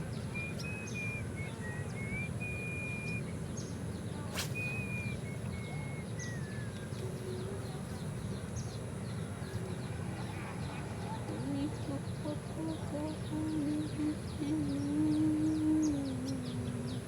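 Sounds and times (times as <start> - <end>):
low background rumble: 7.4 - 17.0.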